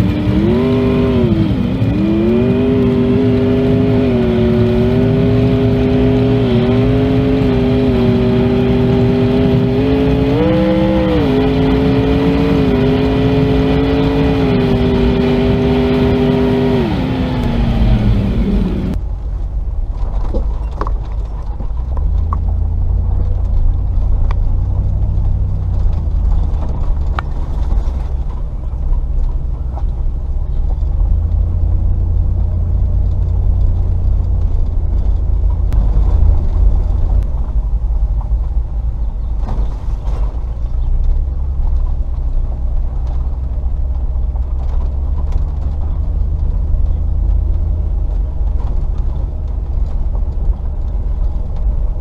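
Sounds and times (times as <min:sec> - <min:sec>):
car engine low drone: 0:00.0 - 0:52.0.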